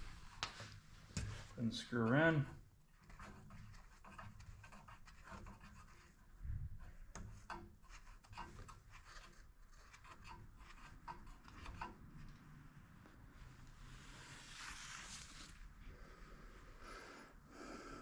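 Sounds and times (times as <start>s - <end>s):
dipstick scraping and clicking: 2.9s - 6.2s, 6.9s - 12.6s.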